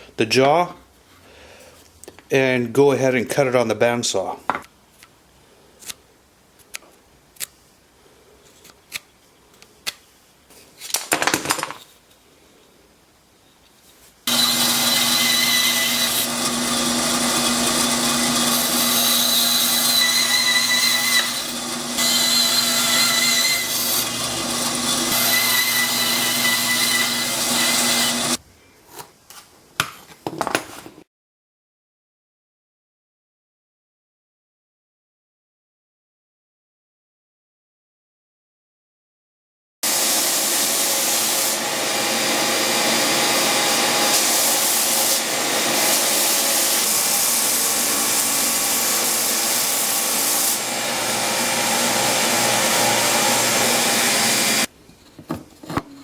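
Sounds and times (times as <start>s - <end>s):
bandsaw cutting wood: 14.3s - 28.4s, 39.8s - 54.7s.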